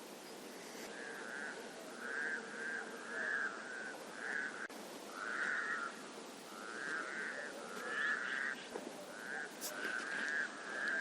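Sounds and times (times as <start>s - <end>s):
frogs calling in chorus: 0.6s - 11.0s.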